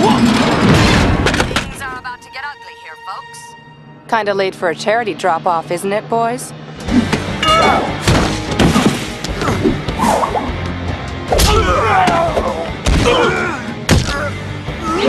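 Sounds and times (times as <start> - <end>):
loud action music: 0.0 - 3.6, 6.6 - 15.0.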